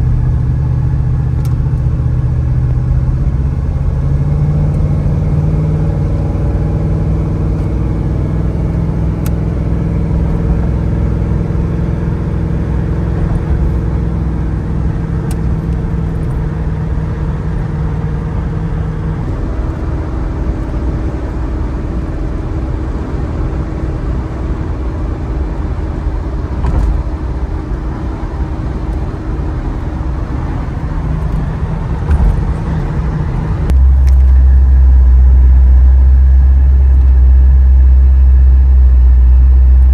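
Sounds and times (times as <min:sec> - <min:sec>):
car engine drone: 0:00.0 - 0:39.9
low rumble: 0:00.0 - 0:39.9
road noise: 0:00.0 - 0:39.9.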